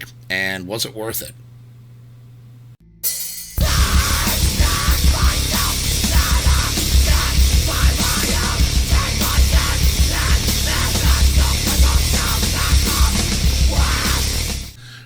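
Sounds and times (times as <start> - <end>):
distorted guitars: 2.8 - 14.8
heavy metal music: 2.8 - 14.8
pounding drums: 3.1 - 14.8.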